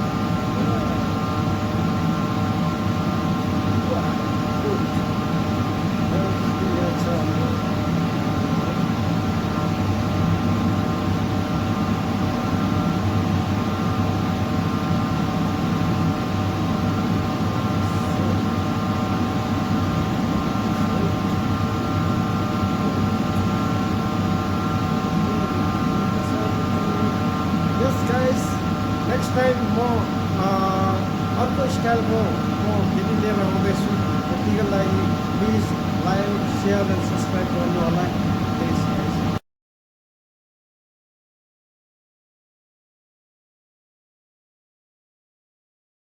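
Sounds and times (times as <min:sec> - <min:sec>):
welding machine electrical hum: 0:00.0 - 0:39.4.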